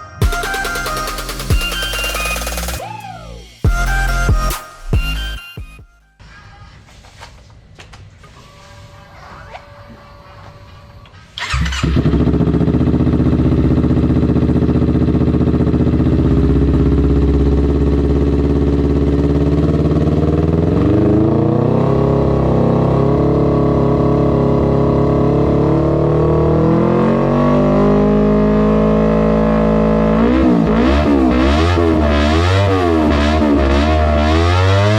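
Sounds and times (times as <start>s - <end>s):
motorcycle engine idling: 11.4s - 21.2s.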